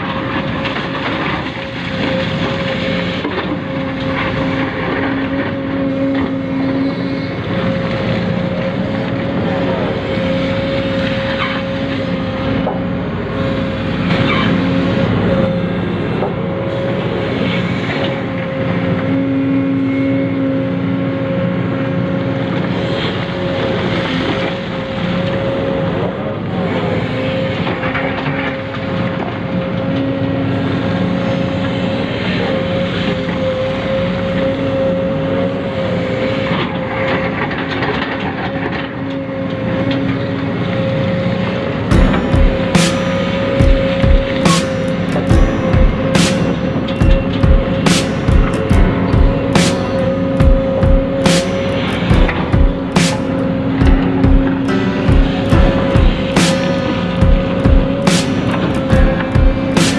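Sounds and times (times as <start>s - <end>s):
low motor tones: 41.9s - 59.9s.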